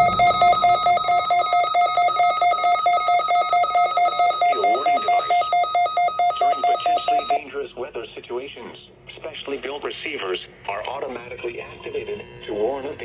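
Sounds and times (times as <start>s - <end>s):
rapid electronic beeps: 0.0s - 7.4s.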